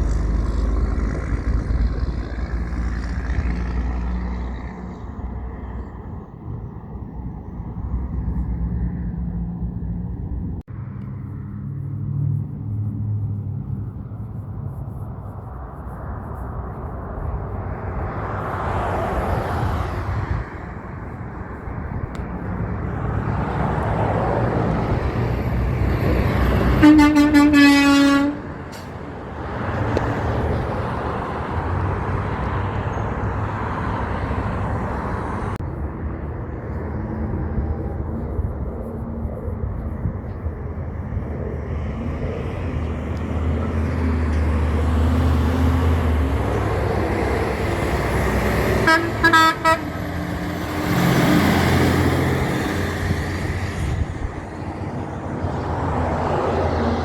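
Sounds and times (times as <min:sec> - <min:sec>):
heavy trucks passing: 0:00.0 - 0:57.0
truck air horn: 0:26.4 - 0:29.0, 0:48.7 - 0:50.4.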